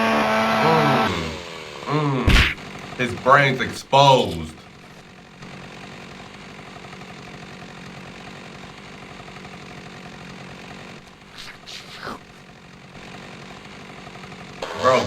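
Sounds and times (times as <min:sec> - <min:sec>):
chainsaw buzzing: 0:00.0 - 0:15.0.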